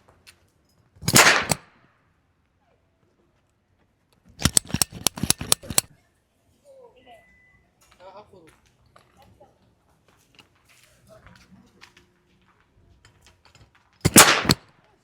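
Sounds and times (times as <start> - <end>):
nail gun firing: 1.0 - 1.6, 4.4 - 5.9, 14.1 - 14.7.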